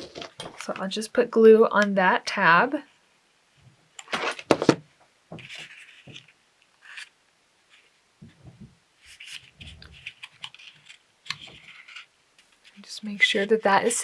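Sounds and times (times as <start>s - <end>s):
paper rustling and scraping: 0.0s - 0.7s, 4.1s - 4.8s, 5.4s - 7.1s, 9.0s - 13.6s.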